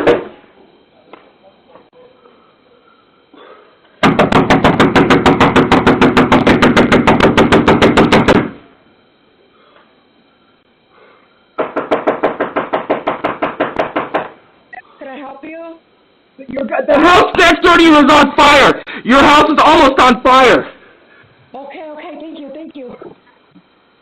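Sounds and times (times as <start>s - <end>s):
rapid pounding on a door: 4.0s - 8.6s, 11.6s - 14.4s.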